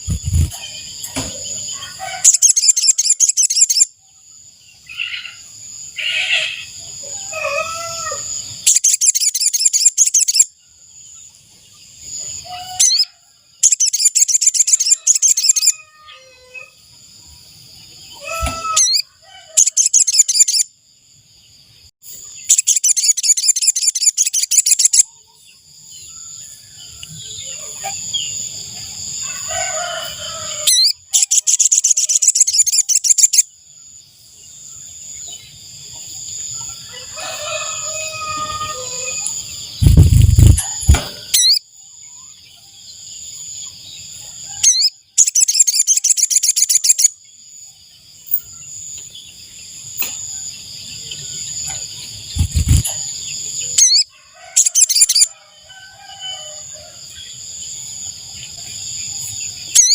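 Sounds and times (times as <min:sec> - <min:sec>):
bird buzzing trill: 0:00.0 - 0:00.7, 0:52.3 - 0:53.0
rooster crowing: 0:01.5 - 0:03.0, 0:06.0 - 0:08.4, 0:14.7 - 0:16.8, 0:29.1 - 0:30.9, 0:36.7 - 0:39.6, 0:53.8 - 0:57.2.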